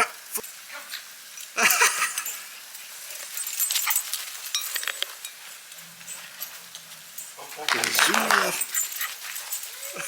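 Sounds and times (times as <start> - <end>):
faint clicks and rustles: 0.4 - 10.0.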